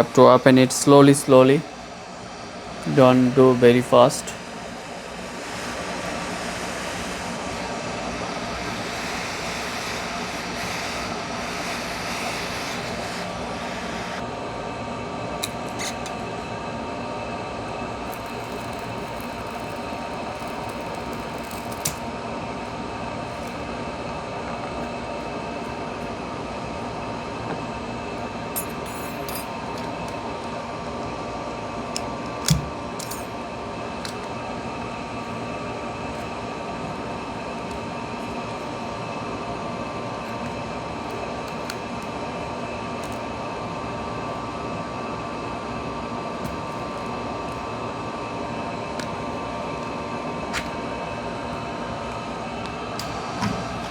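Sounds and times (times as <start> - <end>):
heat gun blowing: 2.8 - 14.2, 18.0 - 22.0.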